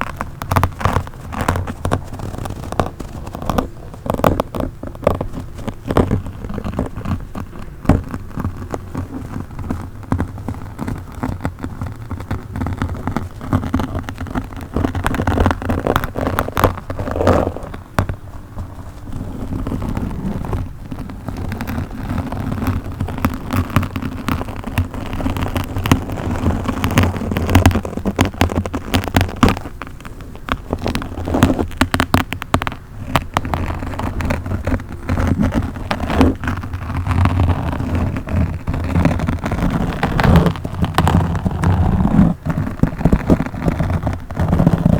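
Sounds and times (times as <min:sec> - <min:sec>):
microphone scratching crackles: 0:00.0 - 0:44.9.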